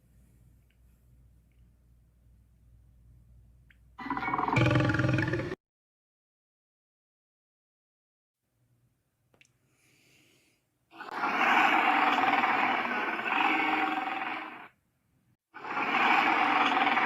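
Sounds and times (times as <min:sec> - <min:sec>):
dinosaur roar: 0:04.0 - 0:05.6, 0:11.0 - 0:14.7, 0:15.6 - 0:17.0.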